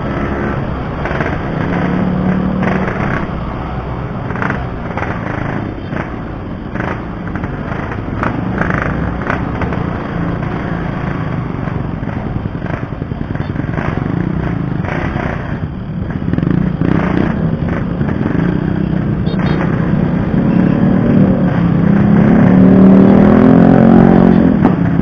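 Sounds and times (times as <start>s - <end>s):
two-stroke motorcycle engine running: 4.2s - 21.4s.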